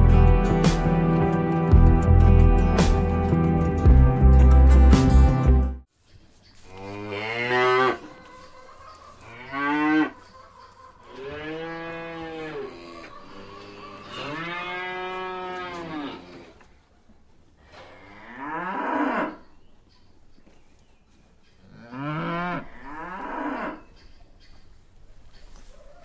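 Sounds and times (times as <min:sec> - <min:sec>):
cattle mooing: 0:11.1 - 0:16.6.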